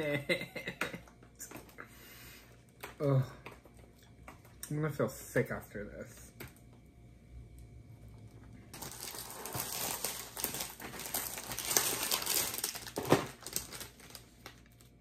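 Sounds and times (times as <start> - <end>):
wrapper crinkling: 8.7 - 15.0
wrapper snap: 8.8 - 15.0.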